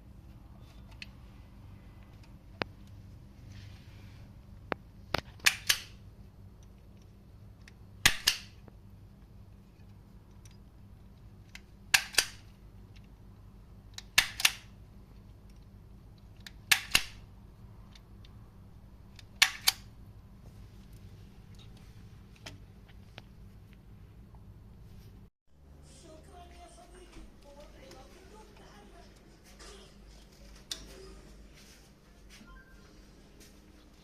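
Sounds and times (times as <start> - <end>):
low steady hum: 0.0 - 34.0
sharp clicks in pairs: 5.2 - 6.0, 7.7 - 8.6, 11.5 - 12.5, 13.9 - 14.7, 16.2 - 17.2.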